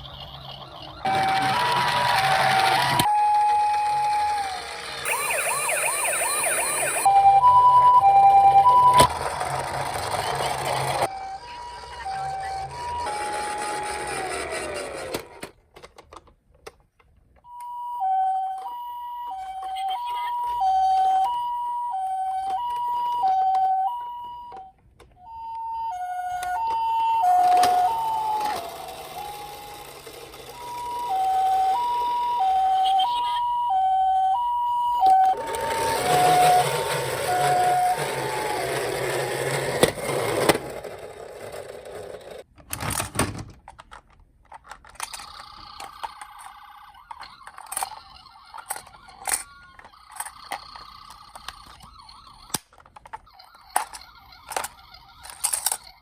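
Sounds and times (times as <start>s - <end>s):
toy cars clicking and tapping: 0.0s - 7.0s, 8.4s - 18.8s, 19.4s - 56.0s
toy siren two-tone beeps: 0.0s - 14.8s, 17.5s - 39.8s, 45.0s - 52.6s, 53.2s - 56.0s
plastic rattling and rolling: 24.8s - 32.8s, 35.0s - 56.0s.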